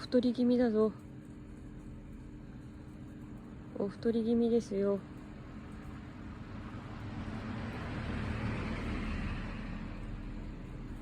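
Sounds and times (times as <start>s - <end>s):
road vehicle passing by: 6.1s - 11.0s.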